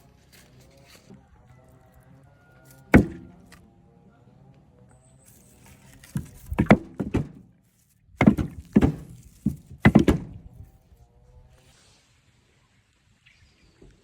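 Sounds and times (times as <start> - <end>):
heavy thunks: 2.9 - 3.6, 6.0 - 7.6, 8.2 - 10.7.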